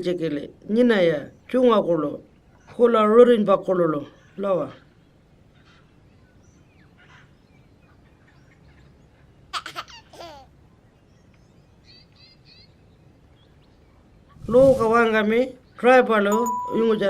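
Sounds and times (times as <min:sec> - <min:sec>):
faint chirps: 0:15.7 - 0:17.0
high-pitched downward sliding calls: 0:16.3 - 0:17.0.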